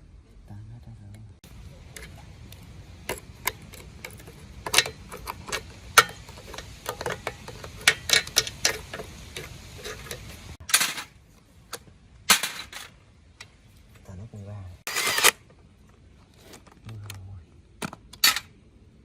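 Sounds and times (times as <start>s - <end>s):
faint low hum: 0.0s - 14.8s, 15.4s - 19.0s
hand tools clicking on metal: 1.8s - 11.0s
metal parts knocking: 3.0s - 11.1s.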